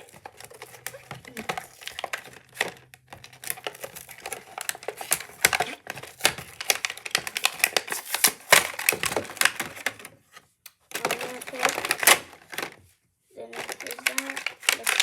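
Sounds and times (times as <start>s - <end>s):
cardboard and plastic crinkling: 0.0s - 15.0s.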